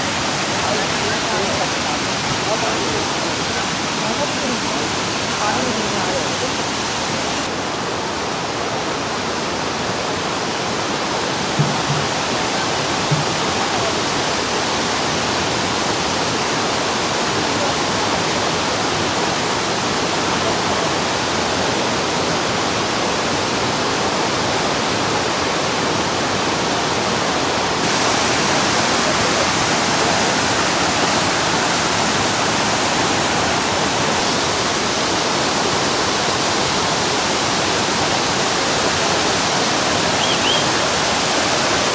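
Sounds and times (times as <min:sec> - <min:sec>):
waterfall crashing: 0:00.0 - 0:41.9
low knocks: 0:11.6 - 0:12.2.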